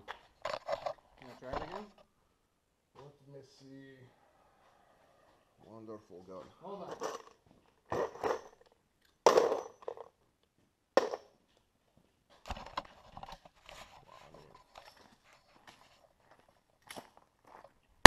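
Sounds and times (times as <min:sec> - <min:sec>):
gun knocks and clacks: 0:12.3 - 0:13.6.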